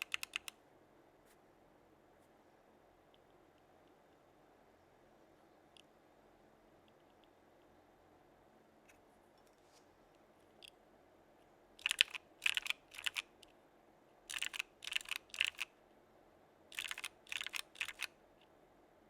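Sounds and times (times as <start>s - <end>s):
mechanical keyboard keystrokes: 0.0s - 0.5s, 11.8s - 13.3s, 14.3s - 15.7s, 16.7s - 18.1s.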